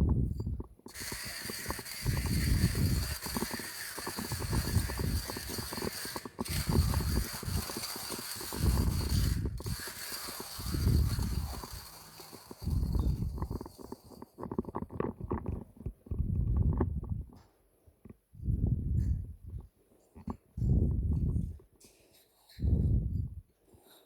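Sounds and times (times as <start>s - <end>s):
hand grinder crushing coffee beans: 0.8s - 15.7s.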